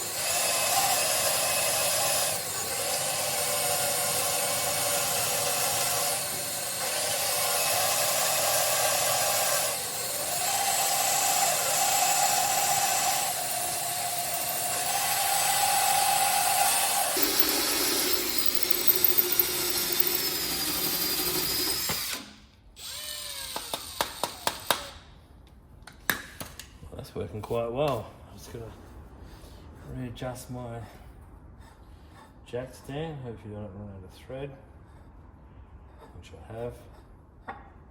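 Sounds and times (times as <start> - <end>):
electric drill drilling: 0.0 - 24.9.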